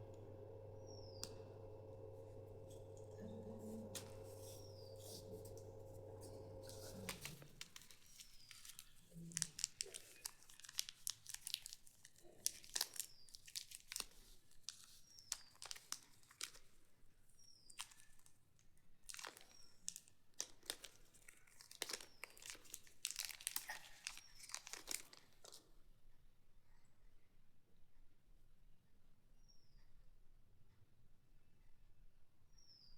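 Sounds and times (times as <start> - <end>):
plastic wrappers crinkling: 0.8 - 16.9, 17.6 - 25.7.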